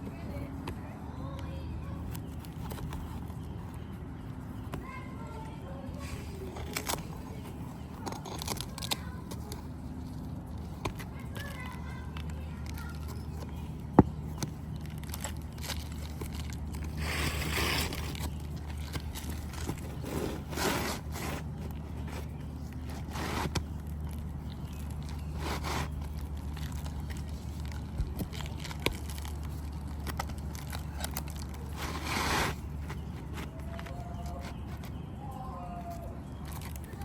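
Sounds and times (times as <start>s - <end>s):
steady low hum: 0.0s - 37.0s
shingles scraping: 15.1s - 34.9s.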